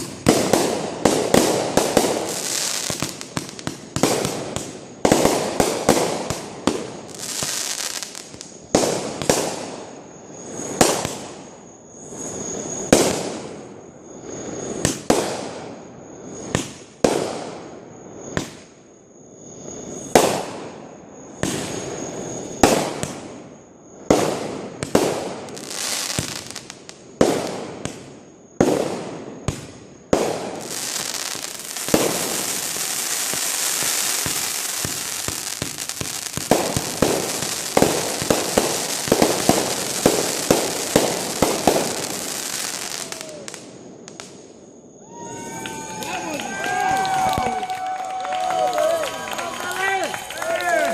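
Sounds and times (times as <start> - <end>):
fireworks banging: 0.0 - 11.3, 19.6 - 44.6
fireworks crackling hiss: 0.0 - 50.9.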